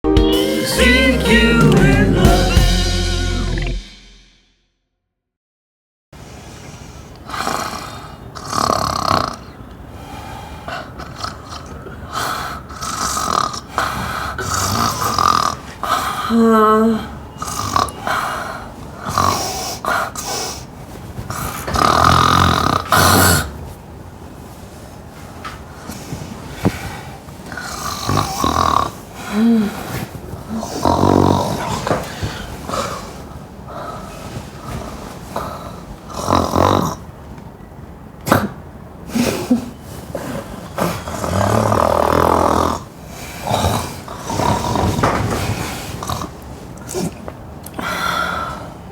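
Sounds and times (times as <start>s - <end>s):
woman snoring loudly: 14.3s - 18.1s, 21.7s - 23.5s, 27.6s - 29.7s, 30.5s - 32.1s, 35.4s - 37.0s, 40.8s - 45.0s.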